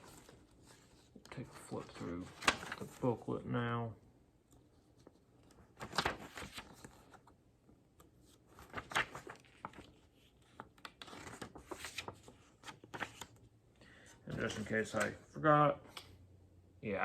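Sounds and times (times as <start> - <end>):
booklet pages rustling: 0.0 - 3.2, 4.5 - 7.4, 8.0 - 13.5, 14.2 - 15.2.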